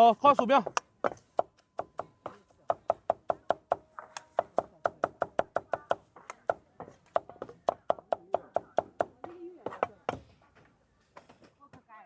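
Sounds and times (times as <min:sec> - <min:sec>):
knife chopping on wooden board: 0:00.6 - 0:10.2.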